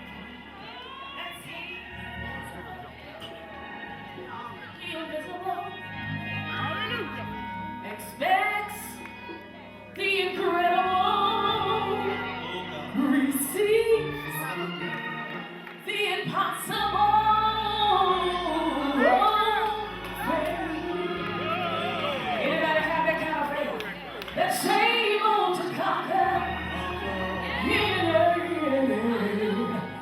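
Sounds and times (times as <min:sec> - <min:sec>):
person singing gospel: 0:10.0 - 0:30.0.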